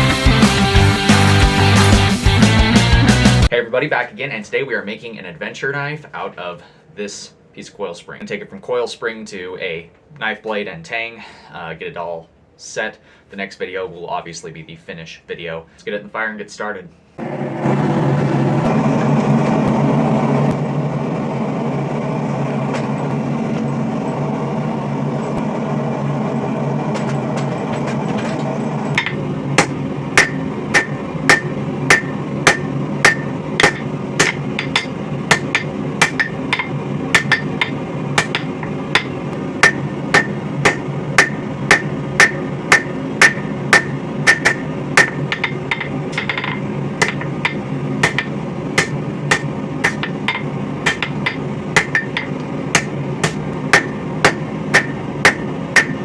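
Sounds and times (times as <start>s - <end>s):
forge drone: 17.2s - 56.0s
hammer striking steel on anvil: 28.9s - 56.0s.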